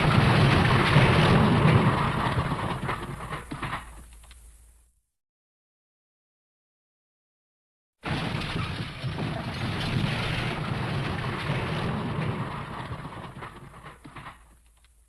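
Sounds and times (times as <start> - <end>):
dense noisy rumble: 0.0 - 4.9, 8.0 - 14.8.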